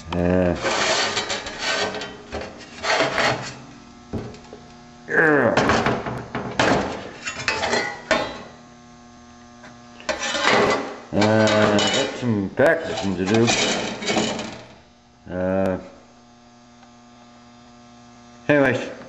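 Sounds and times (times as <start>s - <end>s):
electrical mains hum: 0.0s - 19.0s
scraping and clattering: 0.6s - 3.6s, 6.6s - 8.5s, 10.1s - 12.2s, 12.8s - 14.8s.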